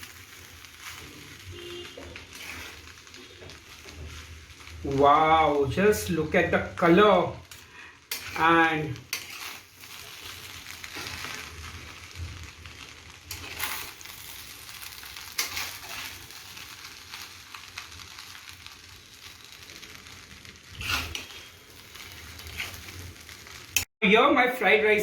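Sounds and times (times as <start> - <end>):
rice sizzling in a pan: 0.0 - 23.9
utensil scraping a pan: 1.8 - 4.2, 8.1 - 11.5, 13.3 - 14.0, 15.3 - 16.2, 20.7 - 23.0.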